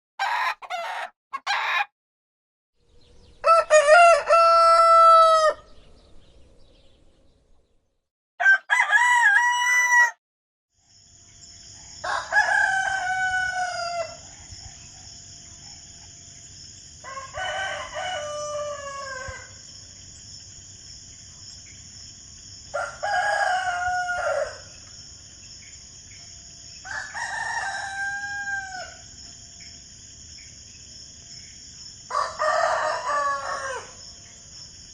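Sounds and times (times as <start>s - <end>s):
roosters crowing: 0.2s - 1.9s, 3.4s - 5.7s, 8.4s - 10.2s, 12.0s - 14.2s, 17.0s - 19.6s, 22.7s - 24.8s, 26.8s - 29.1s, 32.1s - 34.0s.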